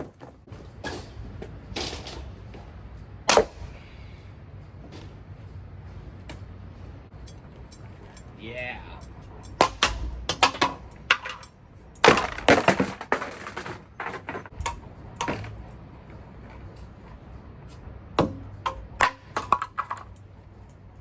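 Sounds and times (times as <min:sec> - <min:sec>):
pieces cracking and clattering: 0:09.4 - 0:15.6
junk being smashed: 0:09.5 - 0:11.4, 0:12.0 - 0:15.6.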